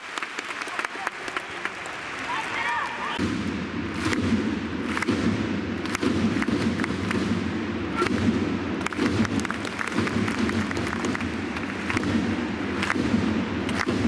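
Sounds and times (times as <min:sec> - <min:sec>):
stadium crowd: 0:00.0 - 0:14.0.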